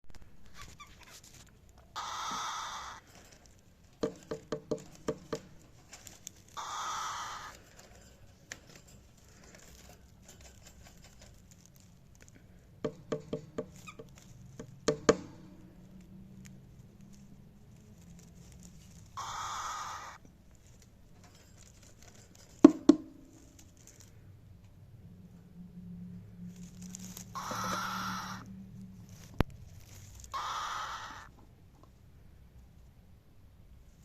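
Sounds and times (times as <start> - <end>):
cockatiel raspy calls: 1.9 - 3.2, 6.5 - 7.7, 19.2 - 20.2, 27.3 - 28.6, 30.1 - 31.4.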